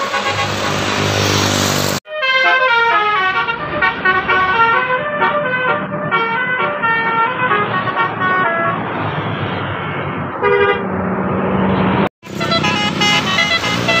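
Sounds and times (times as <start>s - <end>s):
multi-tone bus horn tune: 0.0s - 8.9s, 9.6s - 11.0s, 12.2s - 14.0s
bus engine and road noise: 0.0s - 14.0s.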